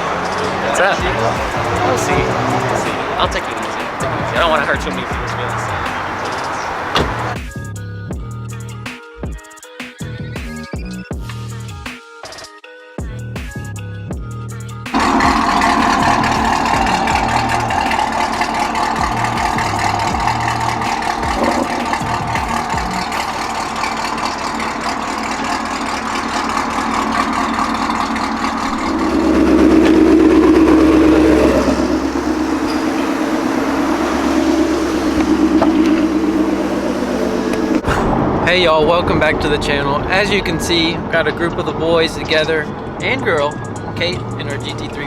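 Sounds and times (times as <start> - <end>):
car engine revving: 0.0 - 7.4, 14.9 - 43.0.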